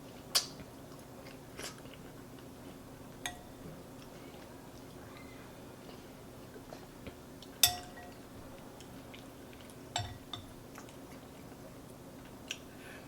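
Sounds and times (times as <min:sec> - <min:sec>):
spoon clinking against bowl: 0:03.2 - 0:03.6, 0:07.6 - 0:08.2, 0:10.0 - 0:10.5.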